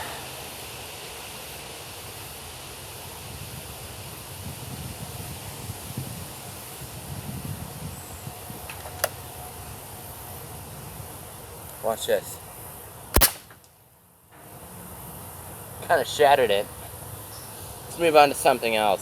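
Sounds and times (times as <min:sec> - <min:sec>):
wind buffeting microphone: 0:04.2 - 0:09.2
sharp click: 0:08.7 - 0:09.2, 0:13.2 - 0:13.6.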